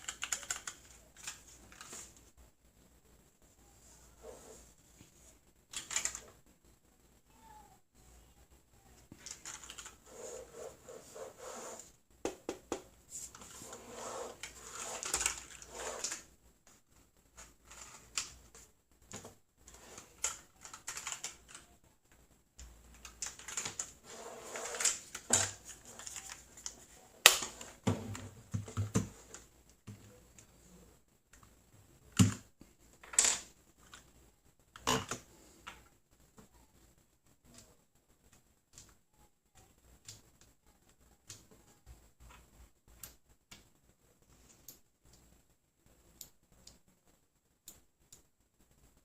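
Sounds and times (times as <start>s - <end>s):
mechanical keyboard keys clacking: 0.0s - 1.4s, 5.8s - 6.2s, 20.2s - 21.7s, 23.0s - 23.9s.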